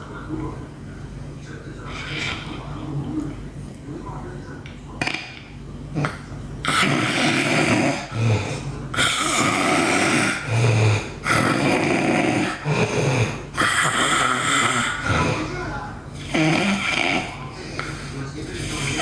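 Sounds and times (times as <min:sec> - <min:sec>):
girl snoring loudly: 0:06.7 - 0:08.4, 0:09.0 - 0:17.4.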